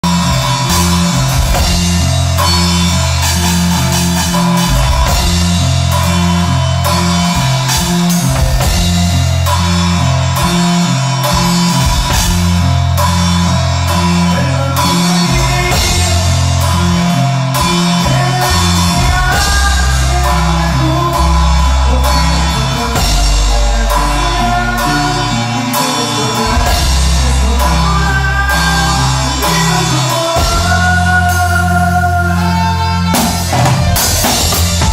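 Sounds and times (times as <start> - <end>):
drum beat: 0.0 - 13.4, 33.1 - 34.9
bass line: 0.0 - 34.9.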